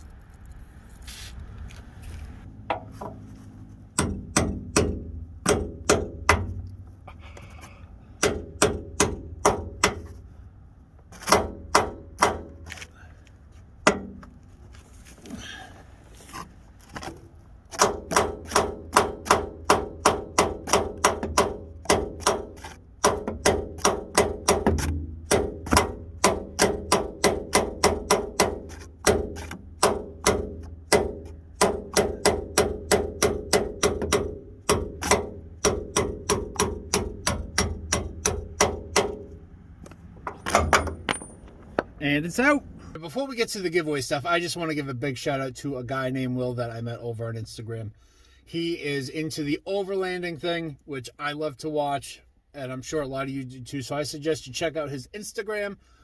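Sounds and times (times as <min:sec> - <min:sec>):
hammer striking metal tool: 0:04.0 - 0:06.6, 0:17.8 - 0:39.3, 0:40.3 - 0:41.9.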